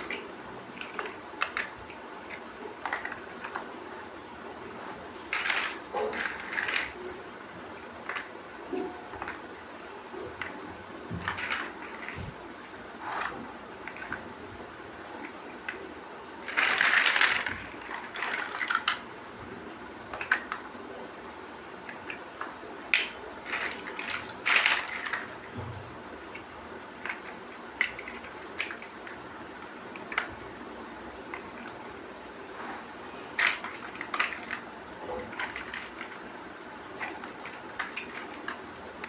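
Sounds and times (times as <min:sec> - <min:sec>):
plastic bricks clicking: 0:00.0 - 0:03.7, 0:05.3 - 0:07.0, 0:16.4 - 0:19.1, 0:20.1 - 0:20.7, 0:21.8 - 0:25.5, 0:26.2 - 0:30.4, 0:33.3 - 0:39.0
plastic bricks rattling: 0:00.0 - 0:03.8, 0:05.2 - 0:08.4, 0:11.2 - 0:12.3, 0:15.2 - 0:19.1, 0:20.1 - 0:20.6, 0:22.9 - 0:25.6, 0:26.2 - 0:30.4, 0:33.3 - 0:39.0.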